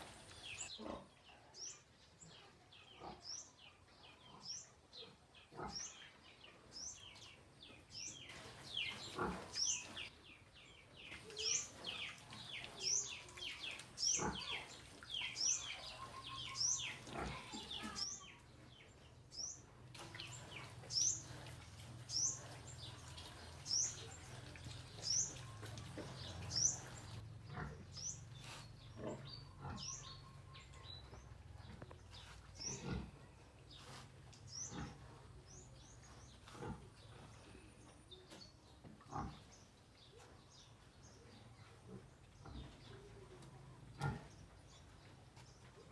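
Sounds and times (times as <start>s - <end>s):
piglets chewing: 11.2s - 18.1s, 20.0s - 27.8s
piglets grunting: 14.1s - 14.7s, 15.7s - 18.0s.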